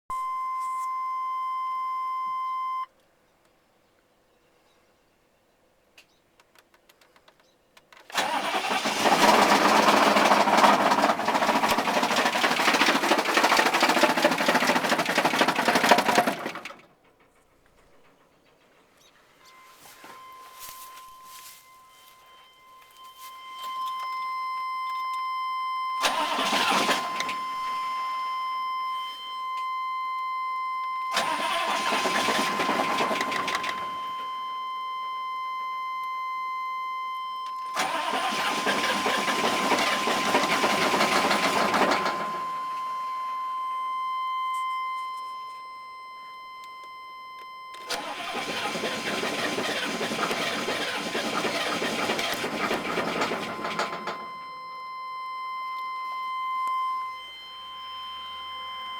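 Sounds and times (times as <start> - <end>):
diesel engine cranking on starter: 8.0 - 19.1, 26.0 - 28.5, 31.1 - 34.4, 37.6 - 43.3, 47.7 - 54.6
steady high tone: 19.3 - 26.0, 53.6 - 58.9.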